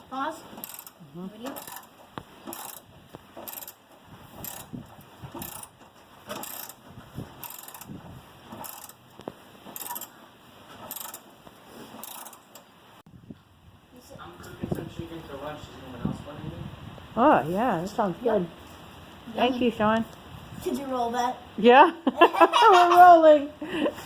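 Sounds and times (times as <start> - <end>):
ratchet wrench clicking: 0.5 - 3.8, 4.4 - 4.7, 5.3 - 6.8, 7.4 - 7.9, 8.5 - 9.0, 9.7 - 10.2, 10.8 - 11.3, 12.0 - 12.6.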